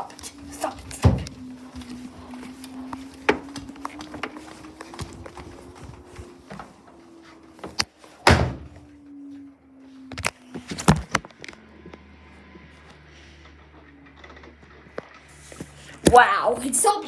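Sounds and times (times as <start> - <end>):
washing machine whine: 0.0 - 17.0
loud thunks: 0.7 - 1.4, 7.7 - 8.8.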